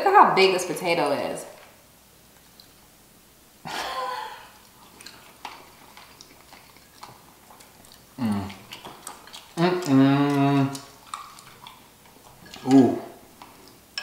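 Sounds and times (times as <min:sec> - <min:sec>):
chewing and food handling: 0:02.3 - 0:02.9, 0:04.5 - 0:14.0
person humming mmm: 0:08.2 - 0:08.7, 0:09.6 - 0:10.9.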